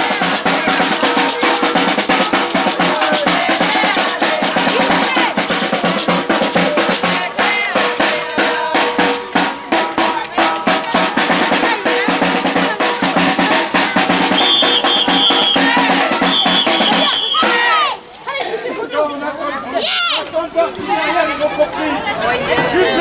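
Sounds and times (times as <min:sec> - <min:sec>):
samba drumming: 0:00.0 - 0:18.0
high steady tone: 0:12.8 - 0:17.6.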